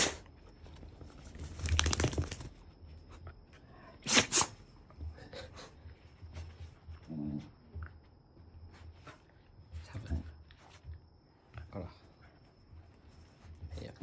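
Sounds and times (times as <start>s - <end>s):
dog sneezing: 0.0s - 0.2s, 4.0s - 4.6s
rustling and clicking: 0.2s - 3.3s.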